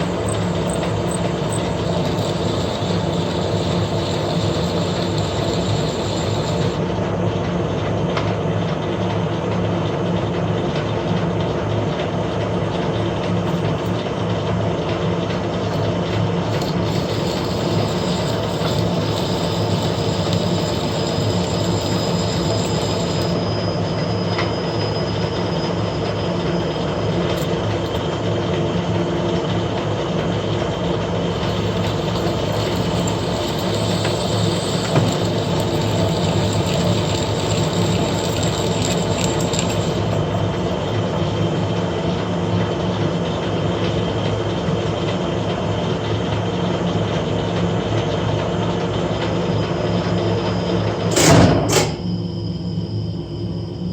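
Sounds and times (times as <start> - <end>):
metal cutting noise: 0.0 - 6.9, 15.7 - 25.9, 31.3 - 42.1
thin high whine: 0.0 - 7.0, 15.6 - 28.2, 31.2 - 43.1, 49.3 - 53.9
lathe drive hum: 0.0 - 8.3, 10.7 - 53.9.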